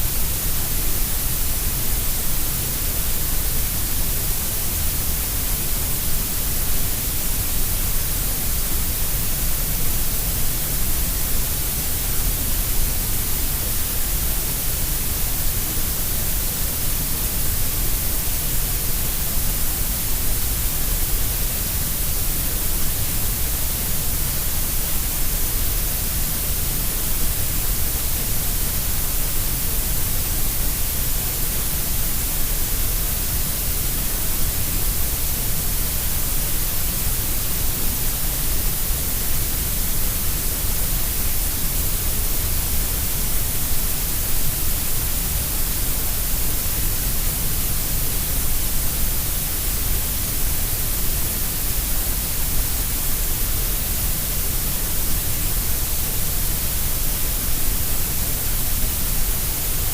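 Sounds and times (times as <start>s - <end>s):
synthetic grey noise hiss: 0.0s - 59.9s.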